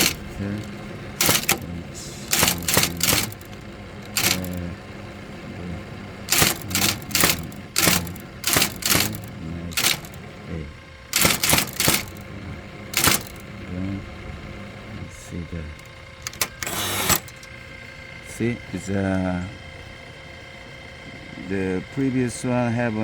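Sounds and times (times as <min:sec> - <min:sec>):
typewriter keystrike clacks: 0:00.0 - 0:01.7, 0:02.3 - 0:04.6, 0:06.3 - 0:10.2, 0:11.2 - 0:12.2, 0:13.0 - 0:13.4, 0:16.2 - 0:17.5.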